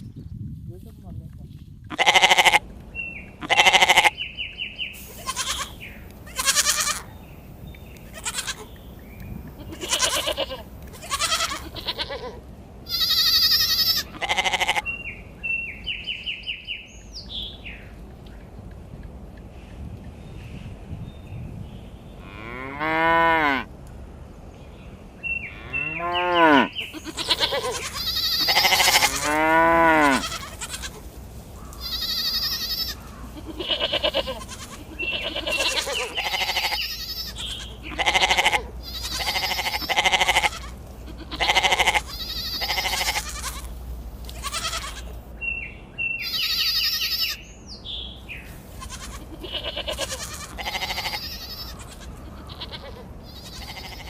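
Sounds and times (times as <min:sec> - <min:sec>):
sheep bleating: 0:01.9 - 0:02.6, 0:03.4 - 0:04.2, 0:05.0 - 0:07.1, 0:08.1 - 0:08.7, 0:09.6 - 0:14.8, 0:25.7 - 0:31.0, 0:31.7 - 0:45.2, 0:46.2 - 0:47.4, 0:48.8 - 0:54.0.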